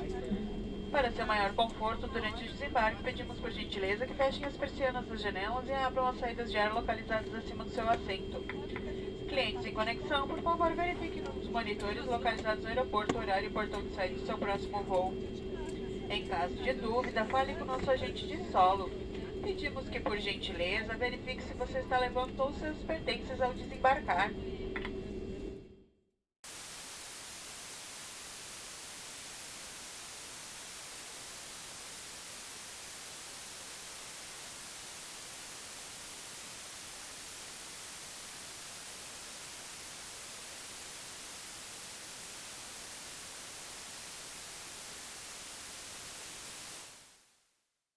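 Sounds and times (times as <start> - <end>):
static hiss: 26.4 - 47.4.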